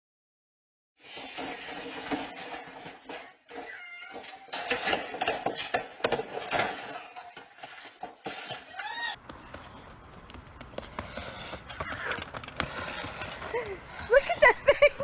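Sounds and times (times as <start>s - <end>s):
cat meowing: 3.6s - 4.7s.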